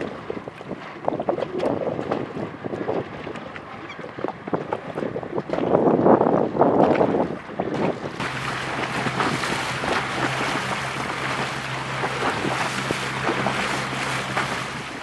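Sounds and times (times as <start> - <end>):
water splashing on a boat: 0.0 - 15.0
wind buffeting microphone: 0.0 - 15.0
steady low hum: 7.8 - 15.0.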